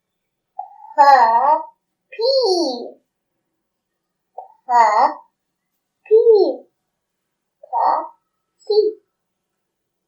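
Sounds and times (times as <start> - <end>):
child saying a letter: 0.6 - 3.0, 4.4 - 5.3, 6.1 - 6.7, 7.6 - 9.0.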